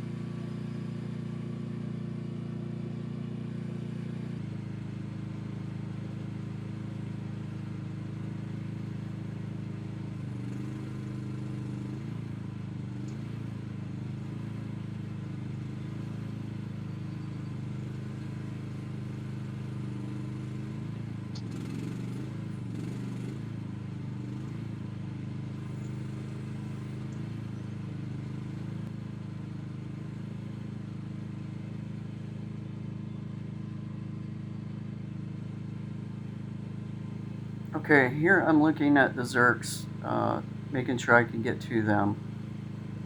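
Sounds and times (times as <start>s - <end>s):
excavator engine running: 37.4s - 43.0s.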